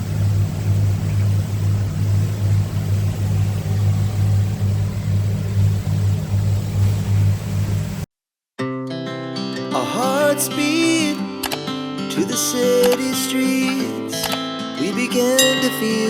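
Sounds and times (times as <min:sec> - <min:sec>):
motorboat engine droning: 0:00.0 - 0:08.0.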